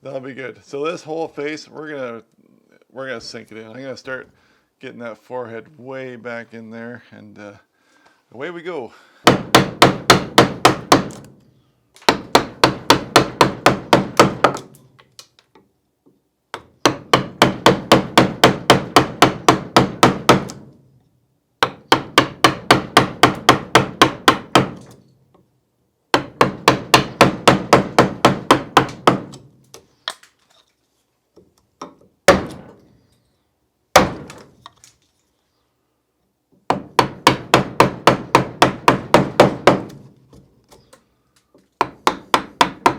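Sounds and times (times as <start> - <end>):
wooden mallet tapping a gouge: 41.8 - 42.9.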